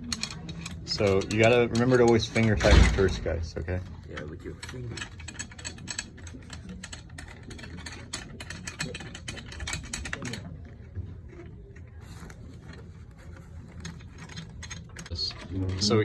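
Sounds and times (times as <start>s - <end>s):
drum tension rods clicking: 0.0s - 10.5s, 13.7s - 16.0s.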